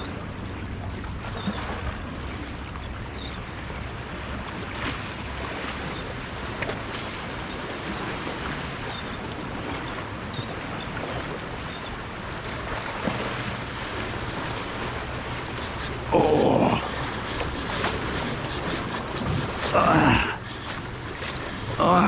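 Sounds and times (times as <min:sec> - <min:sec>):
surf washing: 0:00.0 - 0:22.0.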